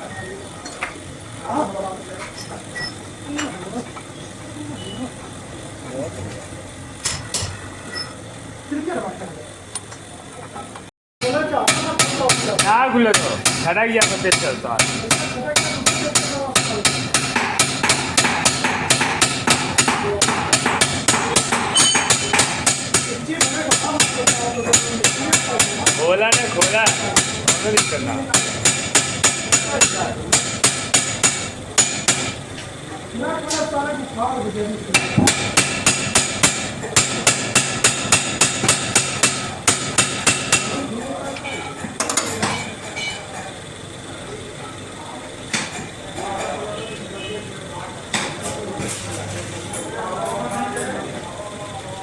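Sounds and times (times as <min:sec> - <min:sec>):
hammer striking metal: 0:11.6 - 0:32.4, 0:34.9 - 0:40.8.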